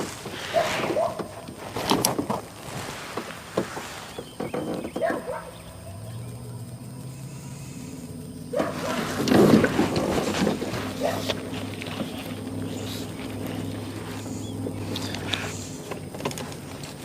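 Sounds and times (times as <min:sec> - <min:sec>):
knocks and clatter in a boat: 0:01.0 - 0:05.5
low motor hum: 0:04.1 - 0:17.0.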